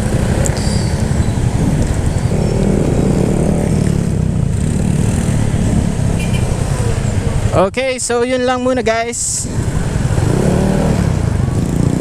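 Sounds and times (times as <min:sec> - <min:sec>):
scooter engine rumbling: 0:00.0 - 0:07.8.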